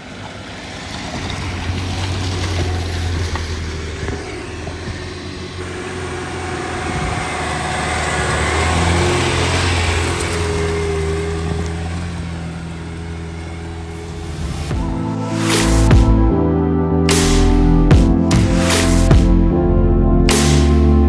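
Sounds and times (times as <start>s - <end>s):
suv engine running under load: 0.0s - 15.0s.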